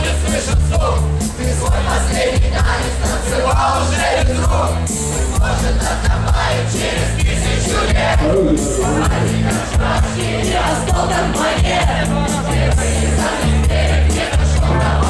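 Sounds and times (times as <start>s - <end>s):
crowd singing along: 0.0s - 15.0s
live rock music: 3.7s - 15.0s.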